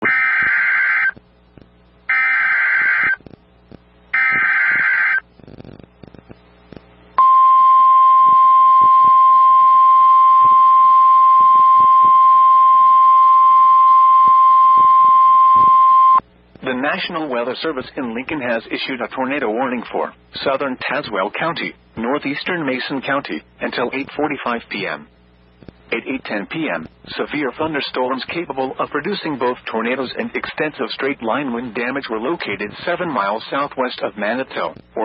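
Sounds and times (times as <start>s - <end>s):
screeching digital data bursts: 0.0s - 1.2s, 2.1s - 3.2s, 4.2s - 5.2s
steady warning alarm tone: 0.0s - 1.2s, 2.1s - 3.2s, 4.1s - 5.2s, 7.2s - 16.2s.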